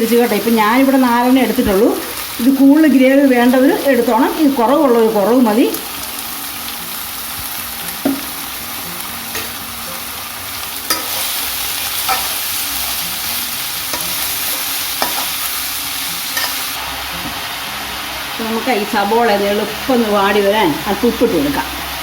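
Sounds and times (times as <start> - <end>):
onions sizzling in oil: 0.0 - 22.0
utensil knocking against pan: 8.0 - 8.4.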